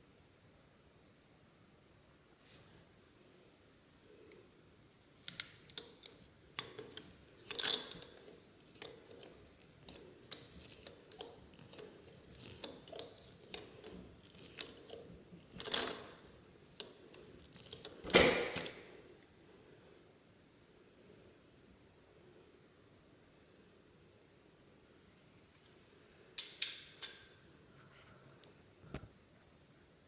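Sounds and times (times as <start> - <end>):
hand tools clicking and knocking: 5.3 - 18.7
tool scraping: 5.6 - 18.7.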